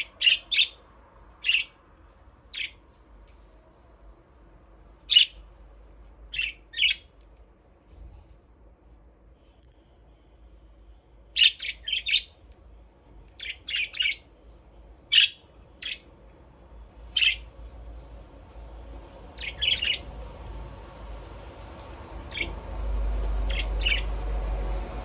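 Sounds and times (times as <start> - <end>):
budgerigars chirping: 0.0 - 0.8, 1.4 - 1.8, 5.1 - 5.4, 6.3 - 7.0, 11.4 - 12.3, 13.4 - 14.2, 15.1 - 16.0, 17.2 - 17.4, 19.4 - 20.1, 22.2 - 22.6, 23.5 - 24.1
faint low hum: 0.0 - 25.0.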